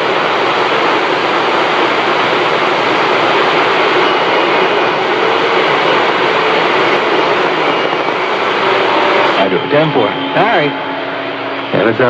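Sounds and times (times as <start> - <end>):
radio static hiss: 0.0 - 12.0
faint whistles: 7.5 - 11.9.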